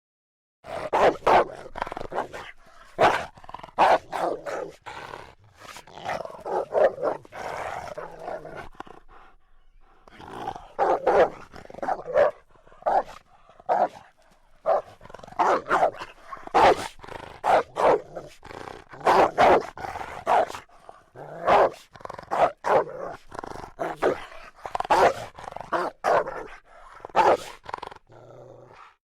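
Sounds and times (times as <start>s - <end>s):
cartoon dogs barking: 0.8s - 4.8s, 10.6s - 18.0s, 19.0s - 20.6s, 21.4s - 23.1s, 24.9s - 26.5s, 27.1s - 27.5s
cartoon dog growling: 10.0s - 13.1s.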